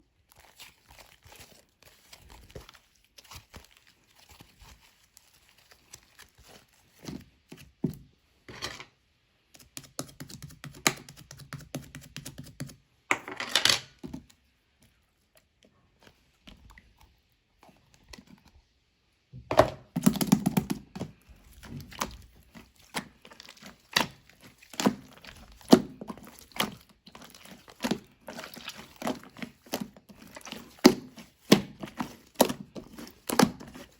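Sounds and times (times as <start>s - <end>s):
slime squishing and crackling: 0.0s - 7.1s, 20.0s - 33.9s.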